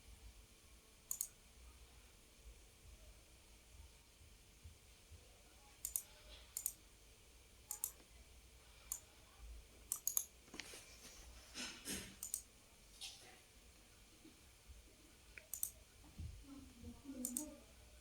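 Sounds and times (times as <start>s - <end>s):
computer mouse clicking: 1.1s - 1.4s, 5.8s - 6.8s, 7.7s - 8.1s, 8.9s - 9.1s, 9.9s - 10.3s, 12.2s - 12.5s, 15.4s - 15.8s, 17.2s - 17.6s
soft rustle: 10.5s - 12.2s.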